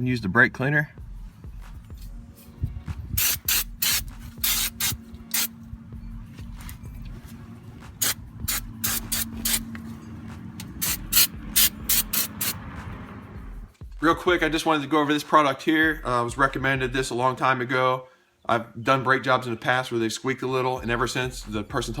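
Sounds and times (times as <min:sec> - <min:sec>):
aerosol spray hissing bursts: 0:03.2 - 0:05.5, 0:08.0 - 0:09.7, 0:10.7 - 0:12.6.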